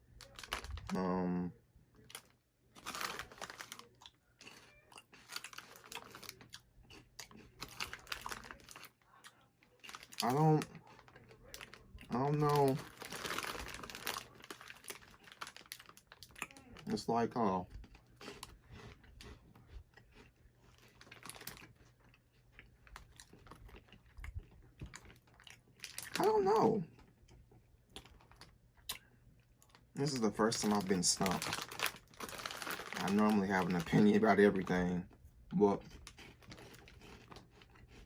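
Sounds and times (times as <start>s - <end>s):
person crunching snacks: 2.0s - 17.0s, 20.0s - 27.1s, 29.6s - 34.6s, 35.8s - 38.0s.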